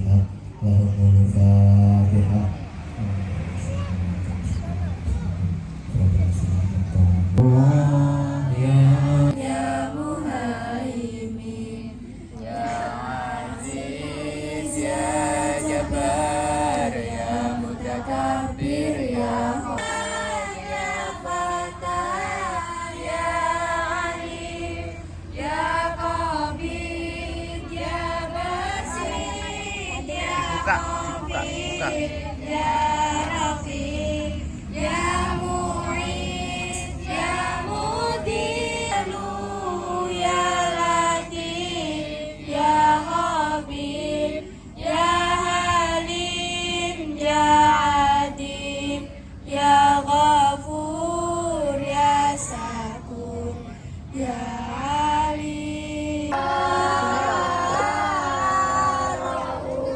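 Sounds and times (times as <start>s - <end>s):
children chanting in unison: 12.4s - 49.1s, 56.3s - 59.9s.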